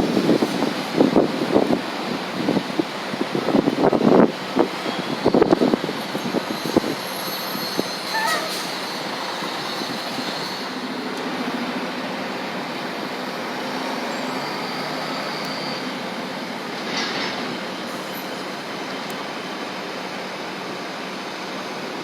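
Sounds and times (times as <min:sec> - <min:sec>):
bus engine and road noise: 0:00.0 - 0:22.0
high squeaks: 0:06.2 - 0:10.8, 0:14.1 - 0:16.0.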